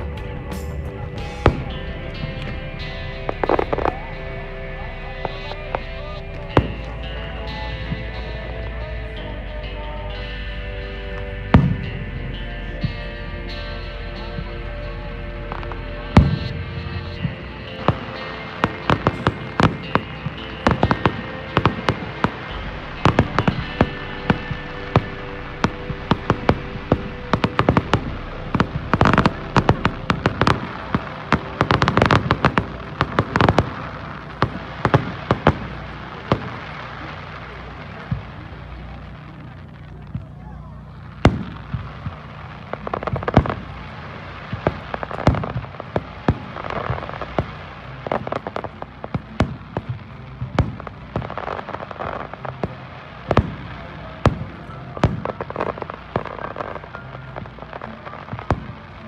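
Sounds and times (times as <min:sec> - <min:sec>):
fireworks bangs and cracks: 0:00.0 - 0:08.6, 0:15.4 - 0:59.0.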